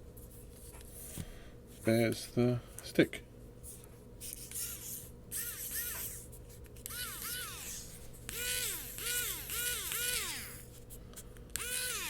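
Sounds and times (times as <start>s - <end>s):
electric screwdriver motor whirring: 5.4s - 6.2s, 6.8s - 10.6s, 11.6s - 12.0s.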